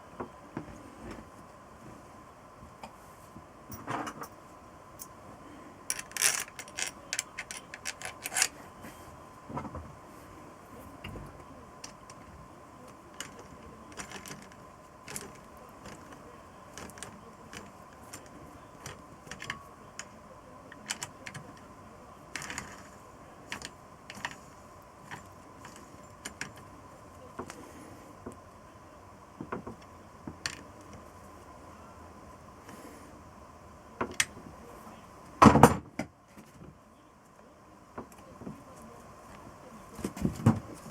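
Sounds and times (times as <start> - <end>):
faint high hum: 0.0 - 40.9.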